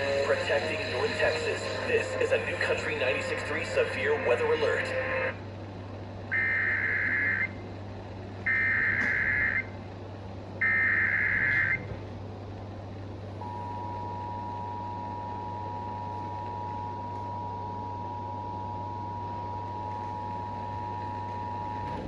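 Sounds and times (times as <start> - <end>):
steady two-tone attention signal: 0.0 - 5.3.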